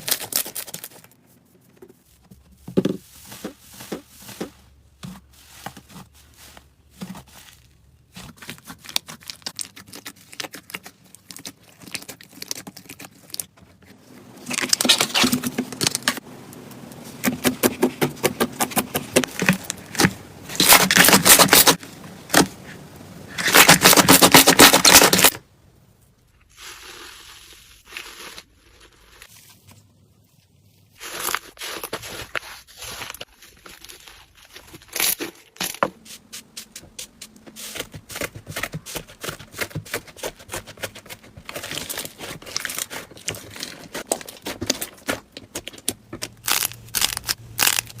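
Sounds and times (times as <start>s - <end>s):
slime crackling and popping: 40.3s - 48.0s.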